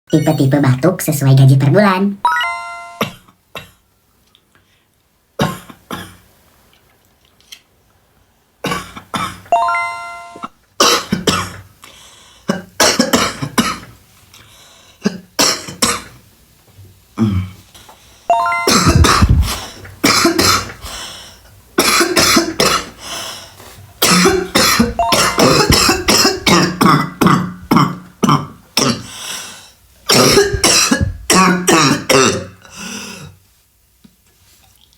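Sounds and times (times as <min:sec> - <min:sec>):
ringing chime: 0:02.3 - 0:03.0, 0:09.6 - 0:10.5, 0:18.3 - 0:18.9
person coughing: 0:18.6 - 0:20.8, 0:21.8 - 0:22.9, 0:24.0 - 0:29.1, 0:30.1 - 0:32.5
throat clearing: 0:18.7 - 0:20.8, 0:24.1 - 0:29.1, 0:30.1 - 0:32.4.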